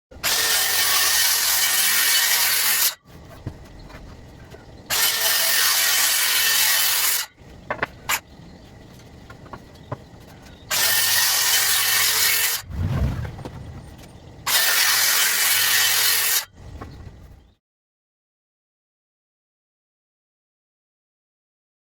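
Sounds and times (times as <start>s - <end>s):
circular saw cutting wood: 0.2s - 3.0s, 4.9s - 7.4s, 10.7s - 16.6s.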